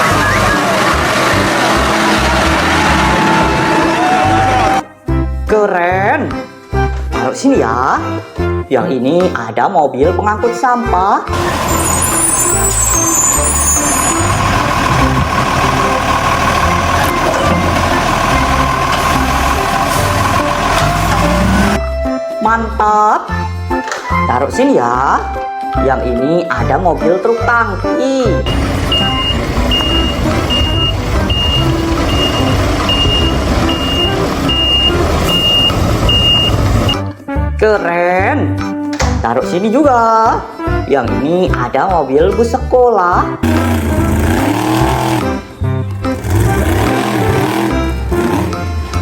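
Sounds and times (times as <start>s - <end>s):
truck engine running: 0.0s - 4.8s, 11.3s - 21.8s, 28.5s - 37.0s, 43.4s - 49.0s
reversing alarm beeping: 11.4s - 16.0s, 28.5s - 37.0s.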